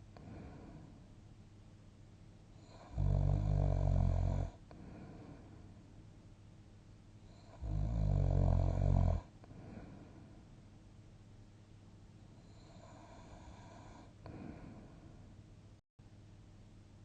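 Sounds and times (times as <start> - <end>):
person snoring: 2.6 - 5.5, 7.4 - 10.0.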